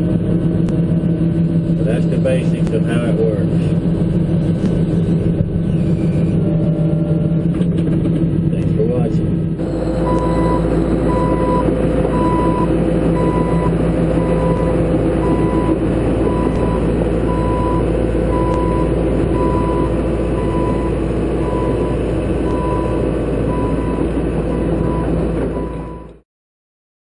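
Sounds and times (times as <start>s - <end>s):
diesel engine running: 0.0s - 26.2s
excavator travel alarm beeping: 5.0s - 7.8s, 9.6s - 26.2s.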